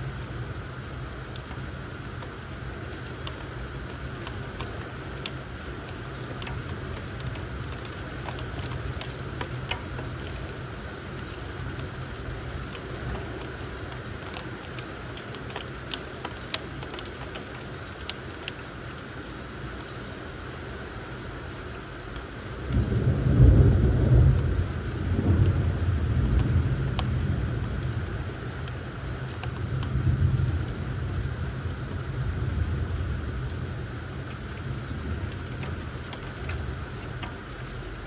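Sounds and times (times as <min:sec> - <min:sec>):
steady rain: 0:00.0 - 0:38.0
drops ticking on hard surface: 0:02.2 - 0:18.7.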